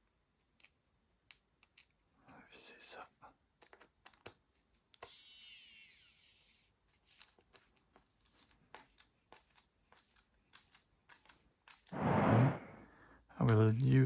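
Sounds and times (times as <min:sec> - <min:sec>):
short rasping noise: 0:11.9 - 0:12.8
high whine: 0:12.0 - 0:12.8.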